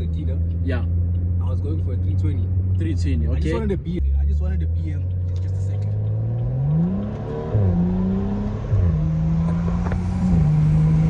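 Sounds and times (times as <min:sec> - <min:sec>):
car engine revving hard: 0:04.5 - 0:11.0.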